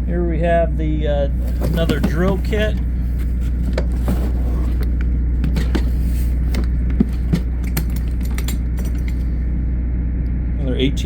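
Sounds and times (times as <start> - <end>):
steady low rumble: 0.0 - 11.0
clicks and rattles of drill case: 1.4 - 9.3.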